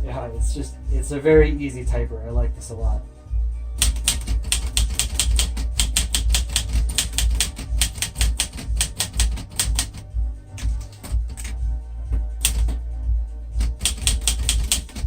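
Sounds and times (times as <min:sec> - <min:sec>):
typewriter keystrokes: 0:03.8 - 0:10.0, 0:10.6 - 0:11.6, 0:12.4 - 0:12.8, 0:13.6 - 0:15.0.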